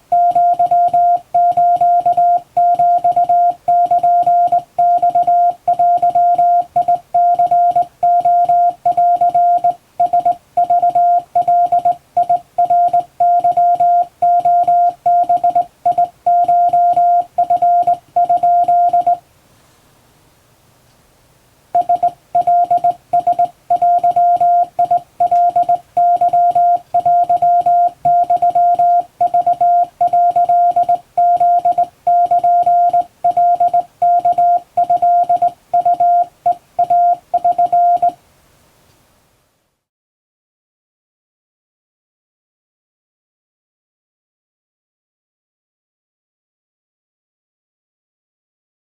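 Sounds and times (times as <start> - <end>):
morse code tone: 0.1 - 19.2, 21.8 - 38.2.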